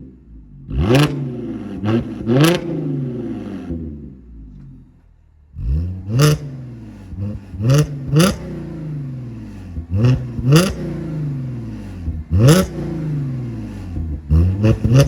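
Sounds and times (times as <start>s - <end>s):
engine throttle blips: 5.6s - 15.0s.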